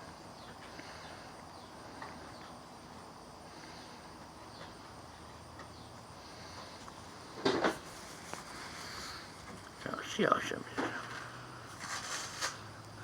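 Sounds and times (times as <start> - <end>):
quiet insect-like chirps: 0.0 - 7.4
faint background noise: 0.0 - 13.0.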